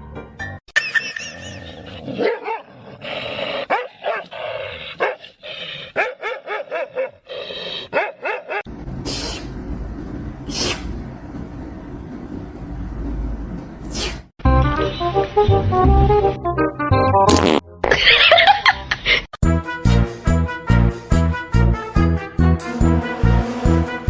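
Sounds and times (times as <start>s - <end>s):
dog barking and yipping: 0.8s - 2.7s, 3.6s - 4.3s, 5.0s - 5.2s, 6.0s - 7.2s, 7.9s - 8.7s
brief hissing swishes: 10.5s - 10.9s, 13.8s - 14.3s.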